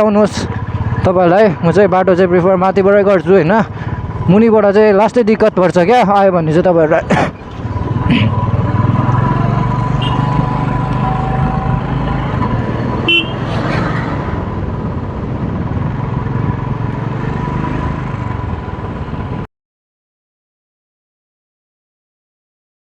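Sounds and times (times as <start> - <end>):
motorcycle engine running: 7.4 - 12.4
horn toot: 9.9 - 10.4.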